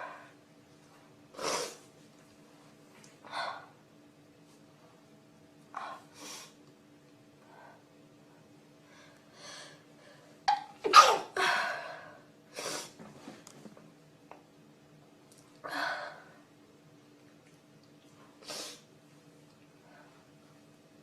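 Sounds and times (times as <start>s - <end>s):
person sneezing: 10.6s - 11.5s.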